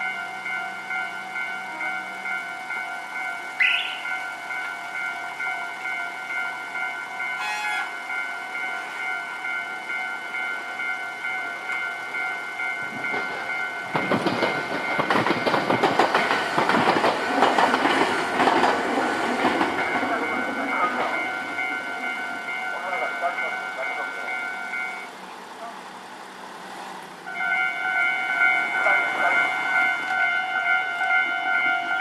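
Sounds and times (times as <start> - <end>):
level-crossing warning bell: 0.0 - 26.0, 27.2 - 32.0
train wheels clattering: 11.7 - 24.9.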